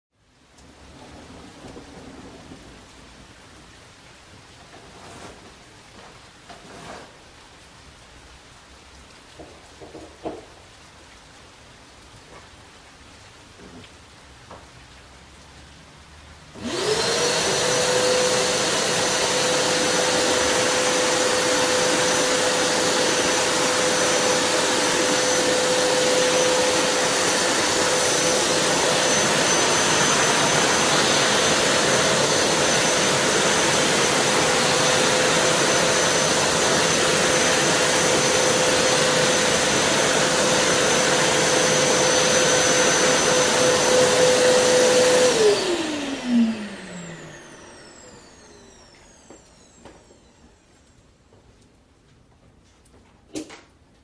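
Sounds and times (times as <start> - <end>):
vacuum cleaner motor running: 16.6 - 51.0.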